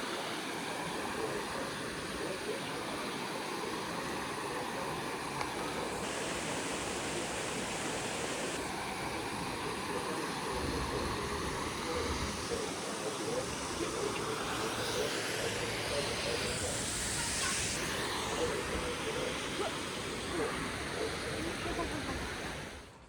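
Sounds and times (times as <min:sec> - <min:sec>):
heavy rain: 0:03.7 - 0:22.8
rushing wind: 0:05.2 - 0:23.0.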